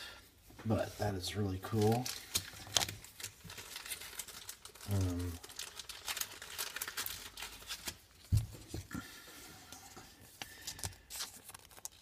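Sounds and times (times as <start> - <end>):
cards clicking and rustling: 1.7 - 8.7, 10.4 - 12.0.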